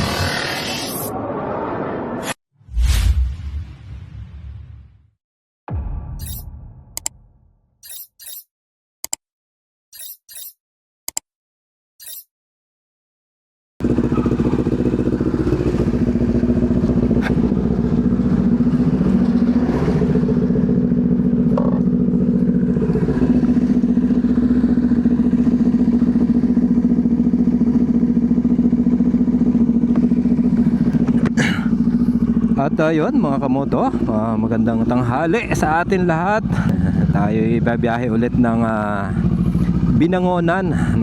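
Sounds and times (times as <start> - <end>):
motorcycle engine rumbling: 13.8 - 41.0.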